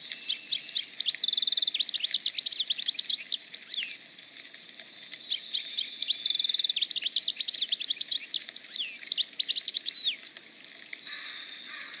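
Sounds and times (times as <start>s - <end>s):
songbirds chirping and singing: 0.0s - 12.0s
bird trill: 0.2s - 3.9s.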